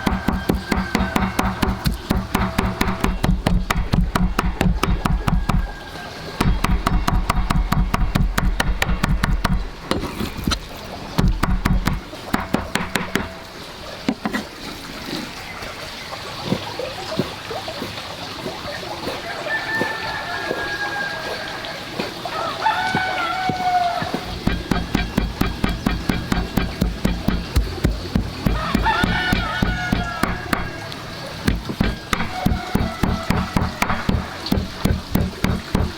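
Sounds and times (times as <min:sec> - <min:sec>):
knife chopping on wooden board: 0:00.0 - 0:05.8, 0:06.4 - 0:13.4, 0:22.9 - 0:35.9
soft knocks: 0:00.0 - 0:05.8, 0:06.4 - 0:14.5, 0:22.8 - 0:35.9.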